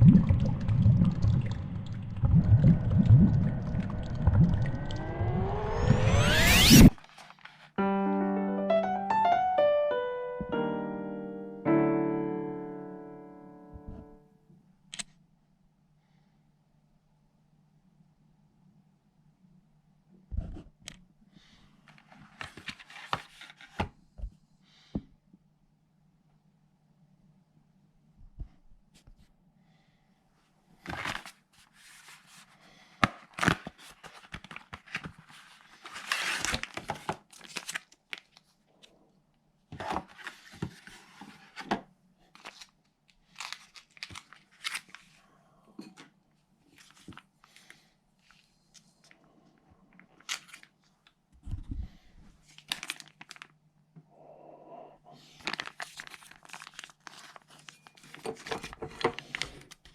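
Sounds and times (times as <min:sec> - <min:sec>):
low steady hum: 0:00.0 - 0:06.9
packaging torn and crinkled: 0:33.3 - 0:38.5, 0:42.4 - 0:45.1, 0:50.2 - 0:50.7, 0:52.5 - 0:53.6, 0:55.4 - 0:59.8.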